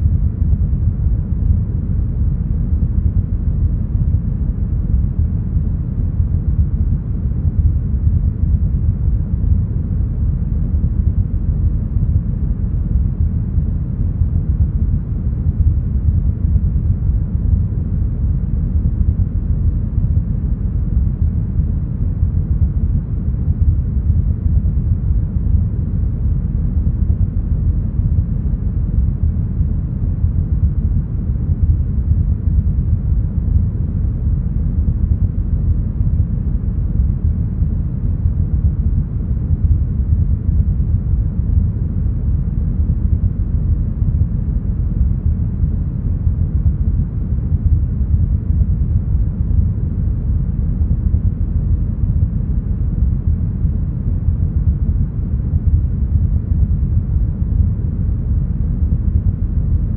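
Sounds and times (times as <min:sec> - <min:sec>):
deep brown noise: 0:00.0 - 0:59.9.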